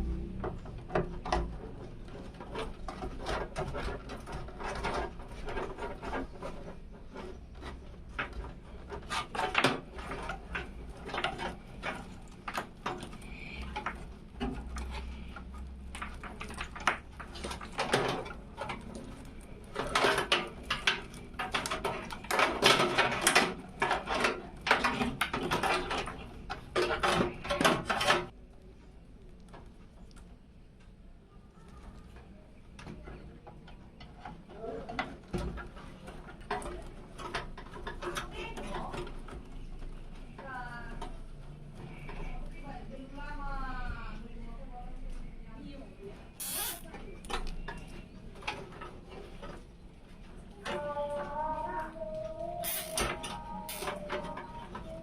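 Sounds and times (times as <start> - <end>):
small hard parts clicking: 46.4 - 49.7, 50.6 - 55.0.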